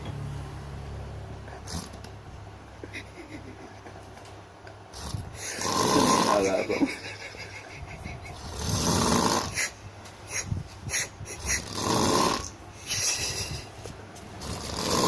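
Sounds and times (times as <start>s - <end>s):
long rasping snores: 1.6s - 2.0s, 4.9s - 6.6s, 8.4s - 9.6s, 11.6s - 12.5s, 14.4s - 15.0s.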